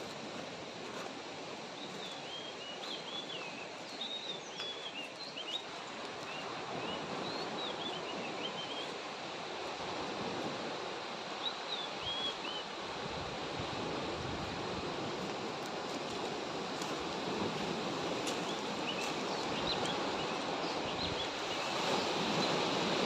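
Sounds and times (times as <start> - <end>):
small birds chirping: 1.8 - 8.9.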